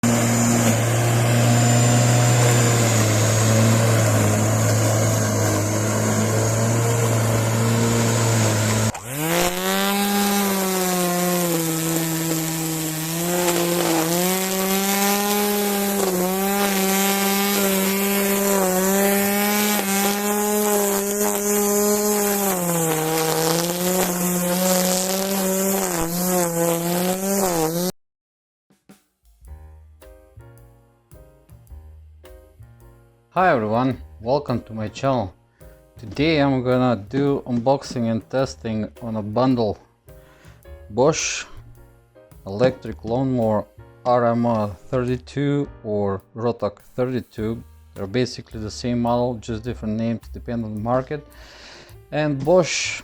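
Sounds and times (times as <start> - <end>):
electric motor humming with whine: 0.0 - 27.9
motor spinning up whining: 0.0 - 27.9.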